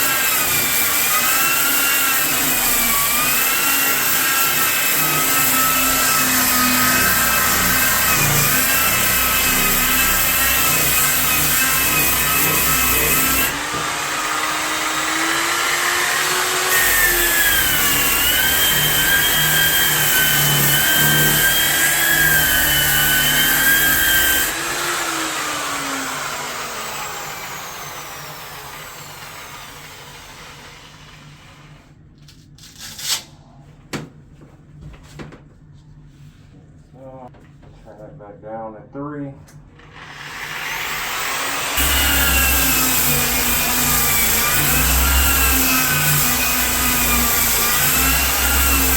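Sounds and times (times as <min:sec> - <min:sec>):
electric sander whining: 0:41.1 - 0:48.9.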